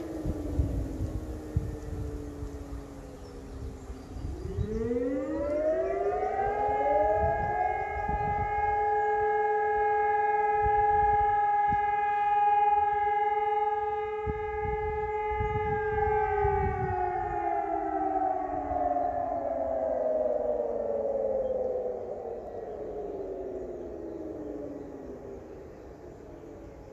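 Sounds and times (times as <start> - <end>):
low gusty rumble: 0.0 - 4.8
siren two-tone wail: 0.0 - 26.6.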